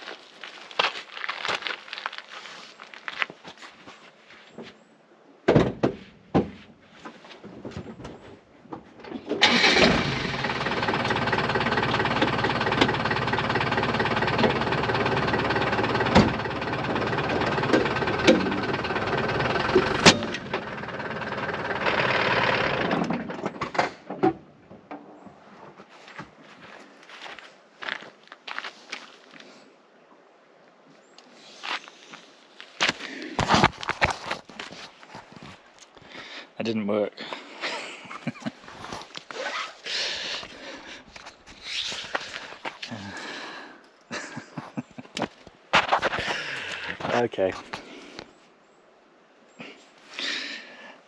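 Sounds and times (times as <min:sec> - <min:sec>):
car engine starting and running: 0:09.2 - 0:24.0.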